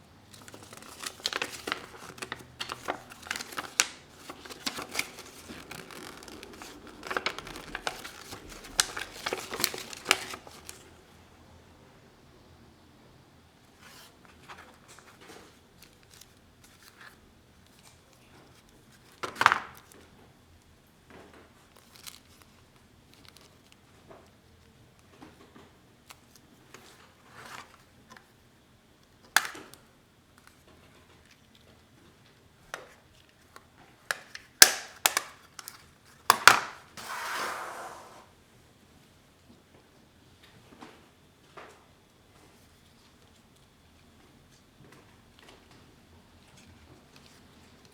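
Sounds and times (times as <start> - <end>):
loud packaging crackle: 0.3 - 10.9
packaging rustling: 0.3 - 10.9.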